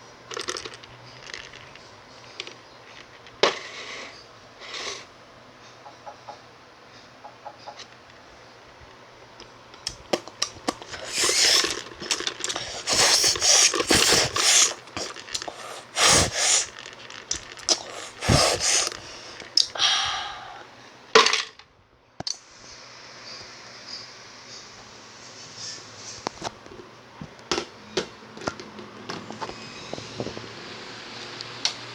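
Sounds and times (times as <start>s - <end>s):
eating mouth noises: 10.7s - 19.8s.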